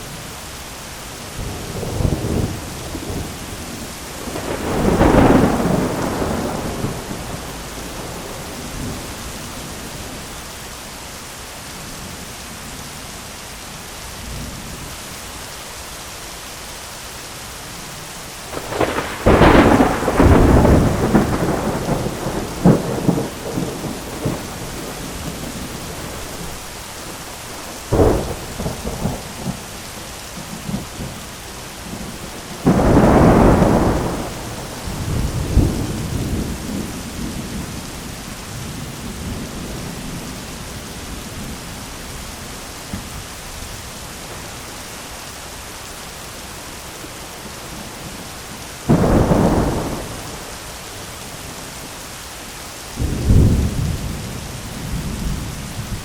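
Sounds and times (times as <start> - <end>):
heavy rain on an umbrella: 0.0 - 56.0
thunder: 4.2 - 9.2, 18.5 - 26.6, 31.9 - 37.9, 48.9 - 50.5, 53.0 - 56.0.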